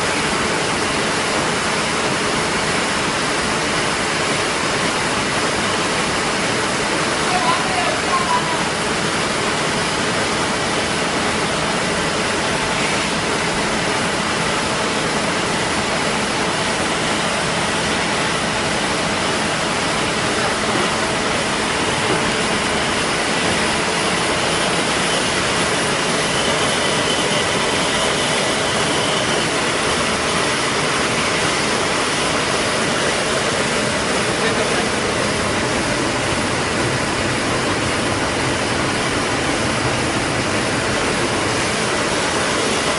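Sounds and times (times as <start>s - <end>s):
machine running steadily: 0.0s - 42.9s.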